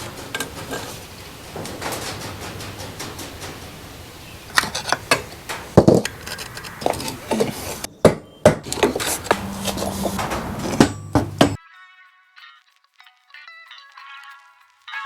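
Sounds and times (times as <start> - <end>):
hand tools clanking on metal: 0.0 - 11.6.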